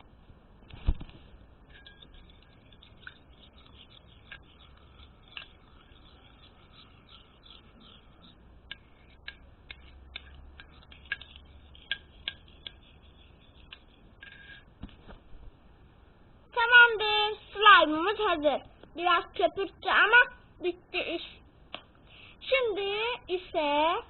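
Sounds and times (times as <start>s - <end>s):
spoon clicking against bowl: 1.7s - 14.6s
wet rubbing of slime: 2.0s - 15.2s.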